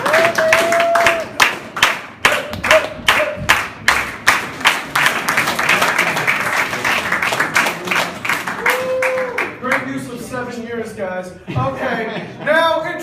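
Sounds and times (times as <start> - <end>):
audience clapping: 0.0 - 10.0.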